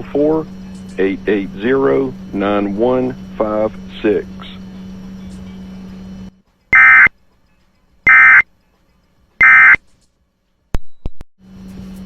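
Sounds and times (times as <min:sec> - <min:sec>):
steady low hum: 0:00.0 - 0:09.8
buzzing digital tone bursts: 0:06.8 - 0:07.1, 0:08.1 - 0:08.4, 0:09.4 - 0:09.8.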